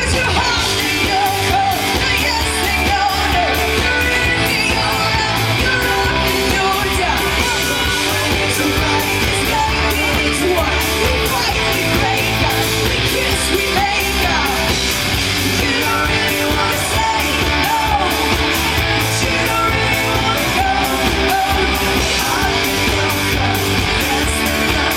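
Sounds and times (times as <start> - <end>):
live pop rock band: 0.0 - 24.9
person singing: 0.0 - 24.9
steady drum beat: 0.0 - 24.9.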